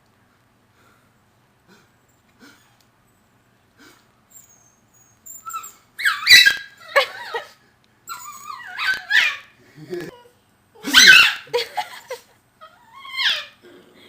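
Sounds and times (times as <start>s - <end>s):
puppy yelping barks: 5.3s - 7.4s, 8.1s - 9.5s, 10.9s - 11.5s.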